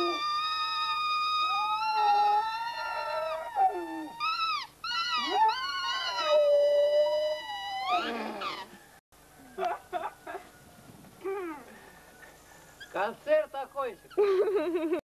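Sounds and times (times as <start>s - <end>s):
dog howling: 0.0s - 8.8s.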